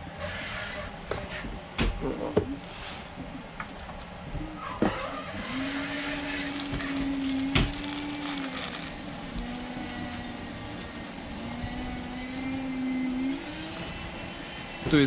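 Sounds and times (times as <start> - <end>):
plastic crinkling: 5.5 - 10.6.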